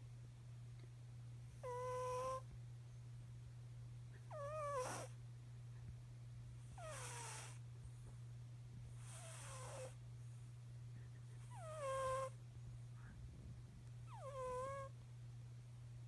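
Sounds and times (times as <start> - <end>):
cat snoring: 1.5 - 2.4, 4.3 - 5.2, 6.6 - 7.6, 9.0 - 10.0, 11.4 - 12.4, 14.1 - 14.9.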